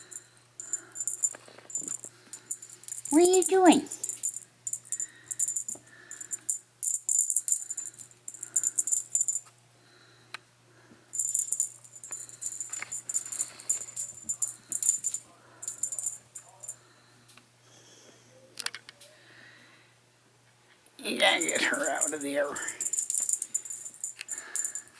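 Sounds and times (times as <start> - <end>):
cat toy jingling: 0.0 - 9.4, 11.2 - 16.8, 21.4 - 24.9.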